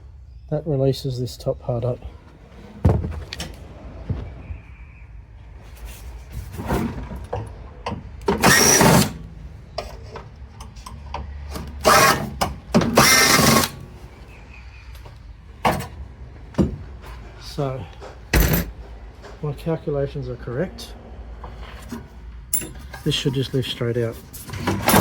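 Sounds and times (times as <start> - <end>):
power drill bursts: 8.4 - 9.2, 11.8 - 13.8.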